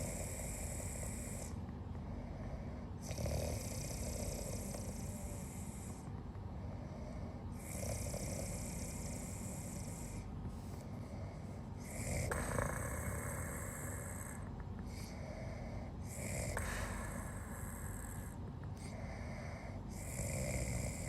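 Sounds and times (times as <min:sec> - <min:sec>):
person snoring: 0:00.0 - 0:01.6, 0:02.3 - 0:10.3, 0:11.1 - 0:21.0.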